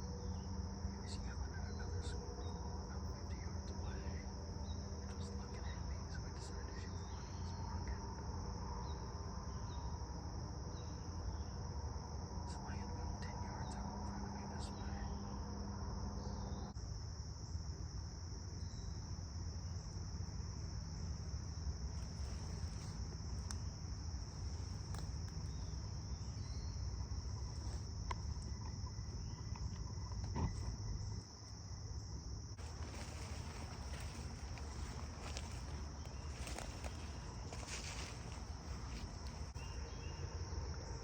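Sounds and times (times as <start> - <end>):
crickets trilling: 0.0 - 41.0
faint ticks: 22.1 - 23.7, 27.4 - 30.8
low rumble: 32.5 - 41.0.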